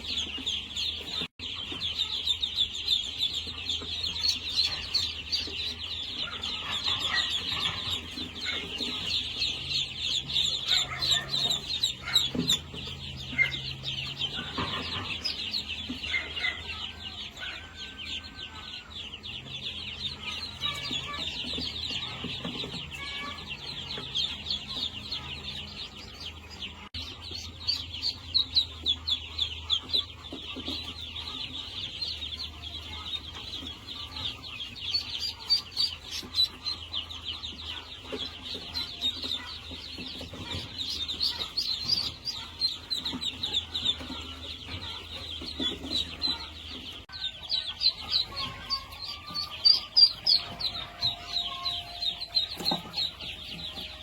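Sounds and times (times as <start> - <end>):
chickens clucking: 0.0 - 54.0
high-pitched chirping: 0.0 - 54.0.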